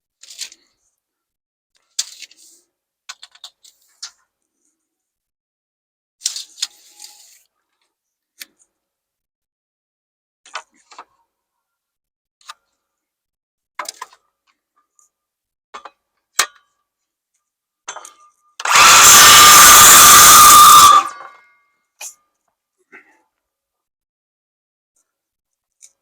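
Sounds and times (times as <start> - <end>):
hand tools and lumber knocking: 17.9 - 21.3.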